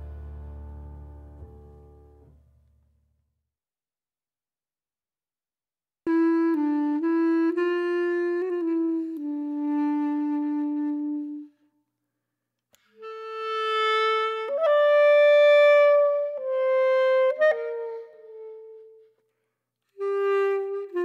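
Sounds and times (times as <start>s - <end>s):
slow saxophone melody: 6.1s - 11.6s, 12.8s - 19.3s, 19.9s - 21.0s.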